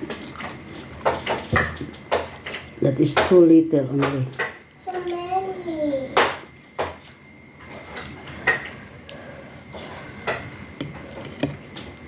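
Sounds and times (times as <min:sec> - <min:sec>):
utensils clinking against a bowl: 0:00.0 - 0:05.2.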